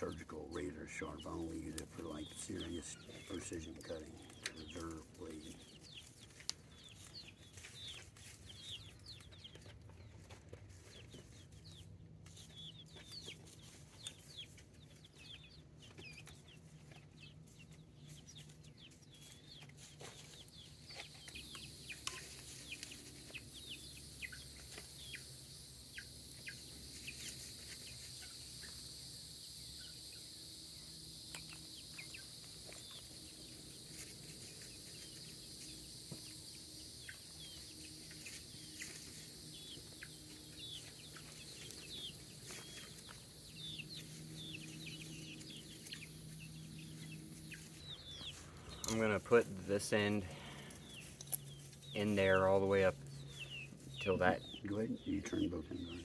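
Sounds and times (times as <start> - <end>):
birds chirping: 0.0 - 56.0
steady high hiss: 21.3 - 50.2.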